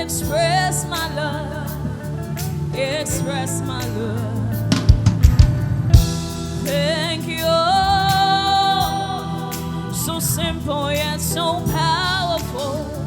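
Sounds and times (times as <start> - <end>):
live band playing: 0.0 - 13.0
person singing: 0.0 - 13.0
sharp drum hits: 4.7 - 7.5.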